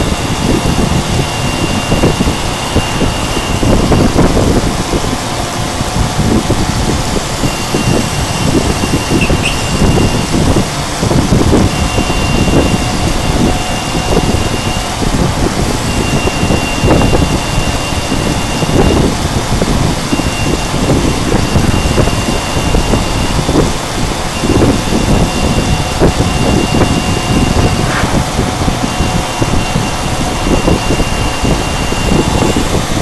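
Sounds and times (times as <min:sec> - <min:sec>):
thin high whine: 0:07.2 - 0:10.7, 0:24.3 - 0:32.8.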